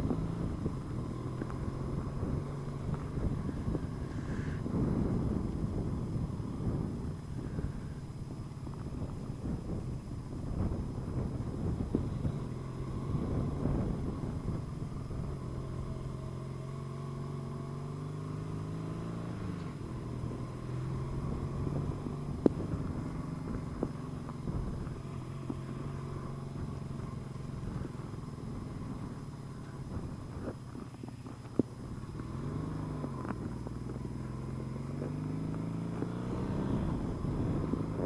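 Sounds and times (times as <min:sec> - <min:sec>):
motorcycle engine running: 0:00.0 - 0:38.0.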